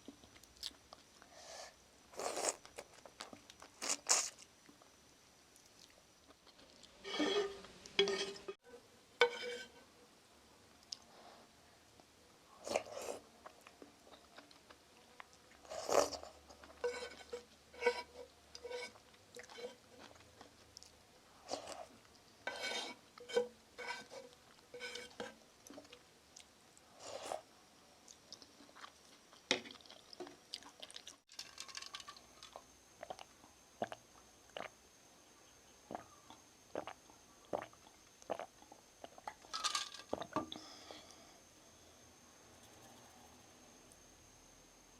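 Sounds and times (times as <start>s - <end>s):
chewing noodles: 28.1s - 31.2s.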